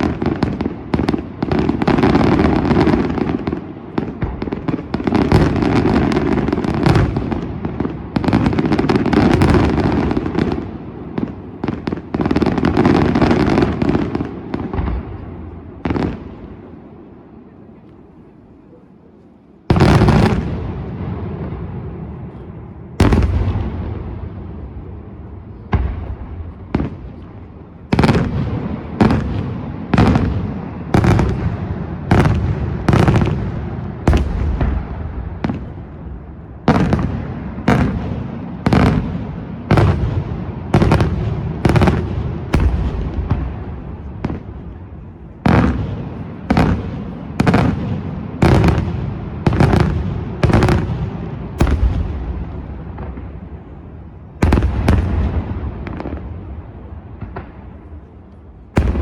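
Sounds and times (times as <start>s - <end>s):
fireworks bangs: 0.0s - 59.0s.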